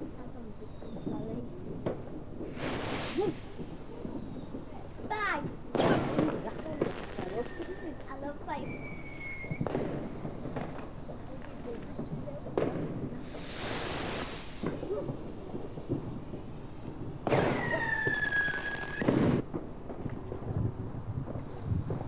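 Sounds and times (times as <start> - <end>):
firework bang: 0.0 - 22.0
firework cracking: 0.0 - 22.0
whistling firework: 0.0 - 22.0
hissing rush: 2.4 - 19.4.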